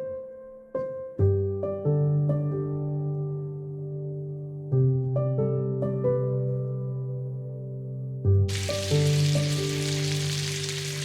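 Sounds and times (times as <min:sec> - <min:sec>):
soft piano music: 0:00.0 - 0:11.0
steady hiss: 0:08.5 - 0:11.0.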